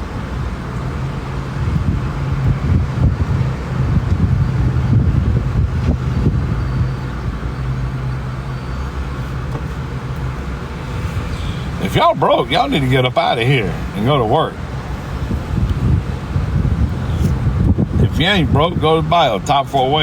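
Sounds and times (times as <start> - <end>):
engine hum: 0.0 - 20.0
road traffic rumble: 0.0 - 20.0.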